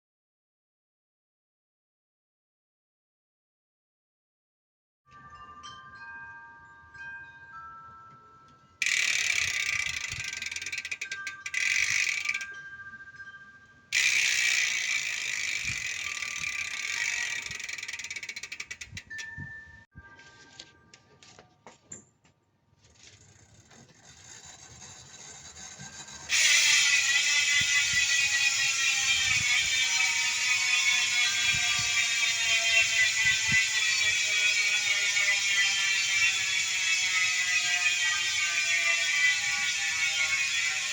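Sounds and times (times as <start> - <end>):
bicycle freehub ratcheting buzz: 8.8 - 12.6, 13.9 - 19.3, 23.2 - 40.9.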